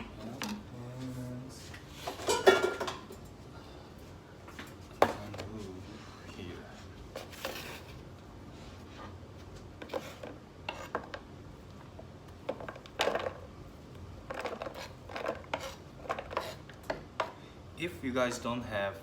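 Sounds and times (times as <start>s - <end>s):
knife scraping cutting board: 7.2s - 8.0s, 9.8s - 11.1s, 14.3s - 16.6s.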